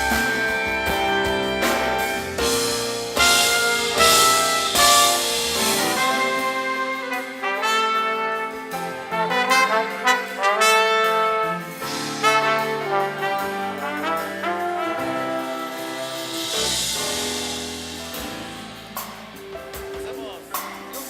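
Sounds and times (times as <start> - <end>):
brass section playing chords: 0.0 - 21.0.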